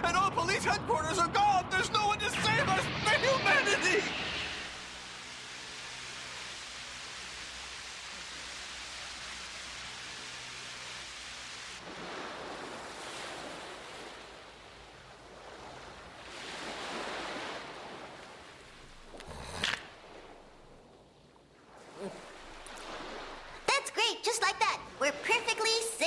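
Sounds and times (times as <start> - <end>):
rushing wind-like noise: 0.2 - 8.6.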